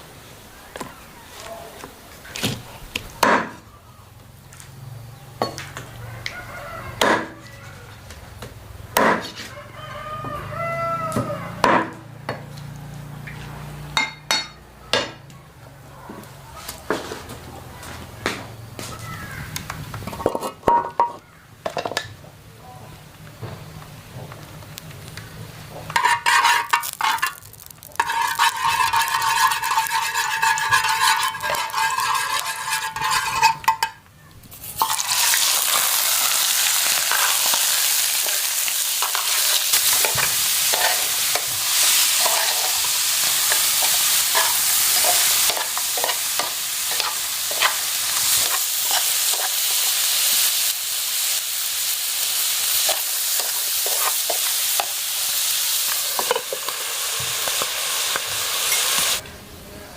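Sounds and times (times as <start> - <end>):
food sizzling in a pan: 24.4 - 33.9, 34.5 - 59.2
utensil scraping pan: 25.8 - 35.5, 37.0 - 49.8, 52.8 - 55.0.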